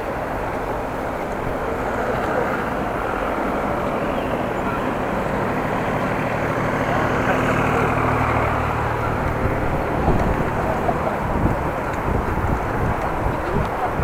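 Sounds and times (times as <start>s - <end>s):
bicycle tyres rolling on road: 0.0s - 14.0s
wind on microphone: 7.9s - 14.0s.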